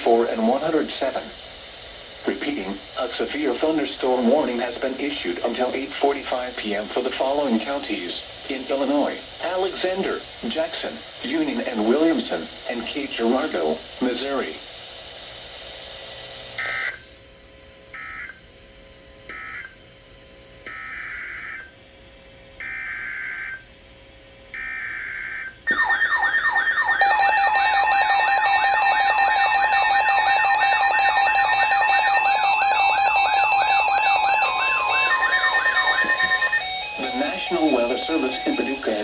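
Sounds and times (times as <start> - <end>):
warbling electronic alert tone: 25.7 - 38.4
screeching data bursts: 25.7 - 38.8.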